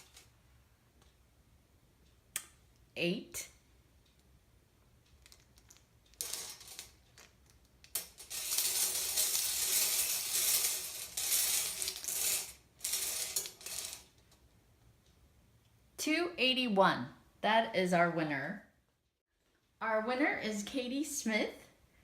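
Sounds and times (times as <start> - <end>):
small hard objects rattling: 8.0 - 14.1.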